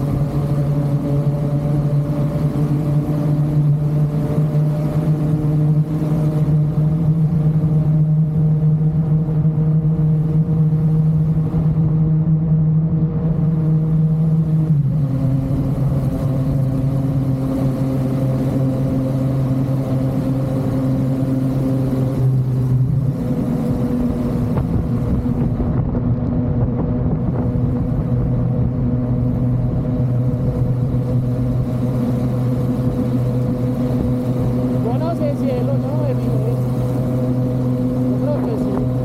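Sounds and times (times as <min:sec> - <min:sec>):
motorcycle engine running: 0:00.0 - 0:39.0.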